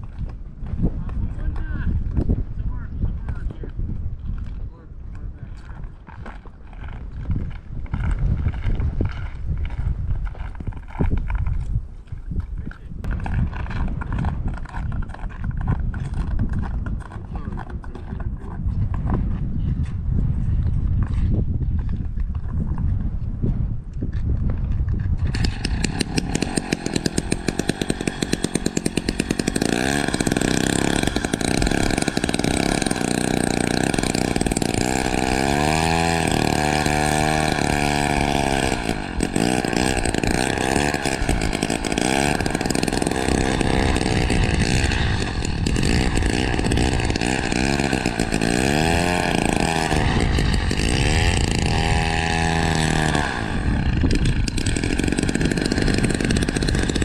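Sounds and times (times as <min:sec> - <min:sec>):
ice auger engine revving: 0:25.2 - 0:57.0.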